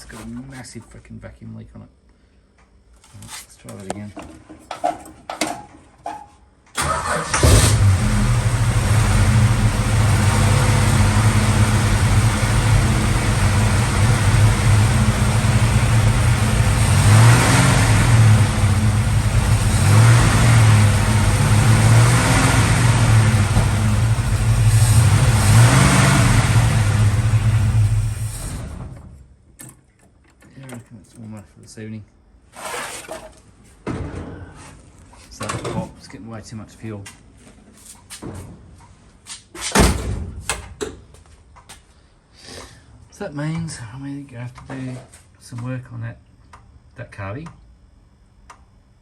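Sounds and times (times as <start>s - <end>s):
car engine starting and revving: 6.8s - 29.0s.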